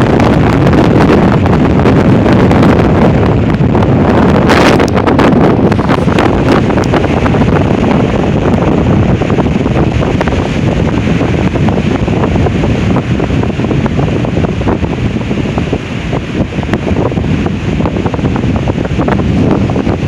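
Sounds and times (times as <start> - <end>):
wind buffeting microphone: 0.0 - 20.0.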